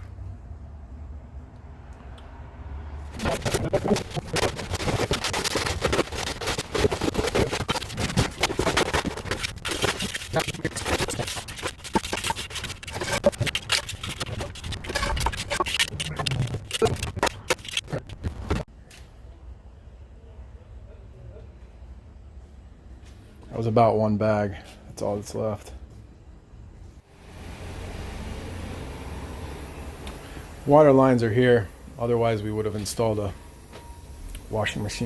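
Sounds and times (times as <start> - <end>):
hand tool scraping wet concrete: 3.2 - 18.0.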